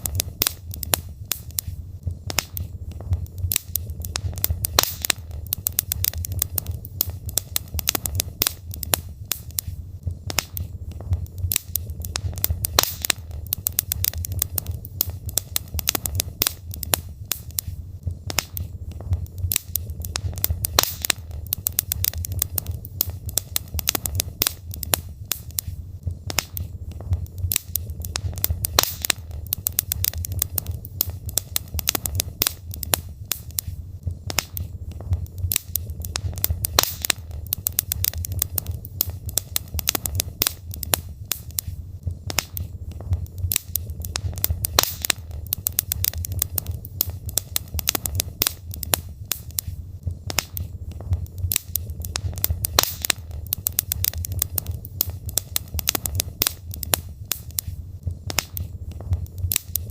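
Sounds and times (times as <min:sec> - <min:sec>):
low rumble: 0:00.0 - 0:59.9
wood fire crackling and popping: 0:00.0 - 0:59.9.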